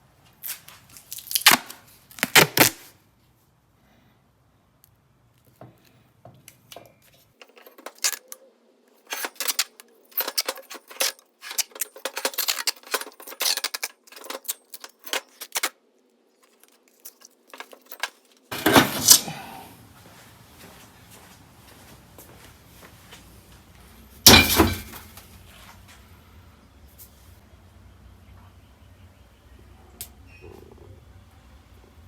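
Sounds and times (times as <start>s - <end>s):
metal parts clinking: 7.3s - 15.8s, 16.4s - 19.2s, 24.3s - 25.3s.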